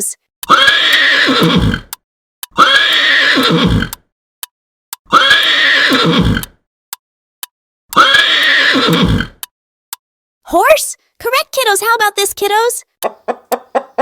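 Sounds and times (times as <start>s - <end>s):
horse whinnying: 0.5s - 1.9s, 2.6s - 3.9s, 5.1s - 6.5s, 8.0s - 9.4s.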